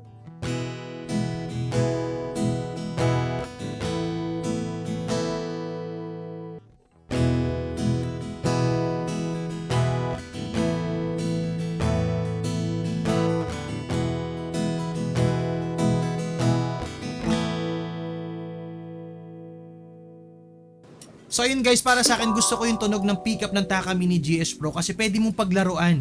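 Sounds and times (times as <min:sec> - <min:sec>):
acoustic guitar strumming chords: 0:21.9 - 0:24.3.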